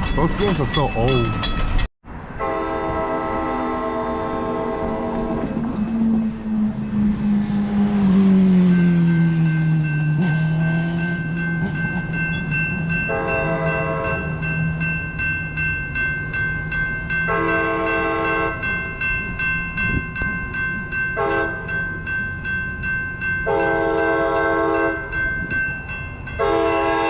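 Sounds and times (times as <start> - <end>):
crossing bell ringing: 0.0 - 27.0
locomotive engine droning: 0.0 - 27.0
train horn blasts: 2.4 - 6.0, 13.1 - 14.3, 17.3 - 18.6, 21.2 - 21.7, 23.4 - 25.0, 26.4 - 27.0.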